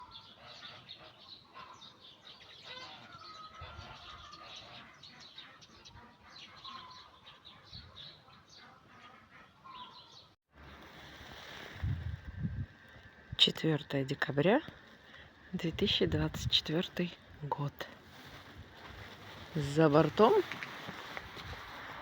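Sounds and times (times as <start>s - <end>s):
small birds chirping: 0.0s - 10.9s.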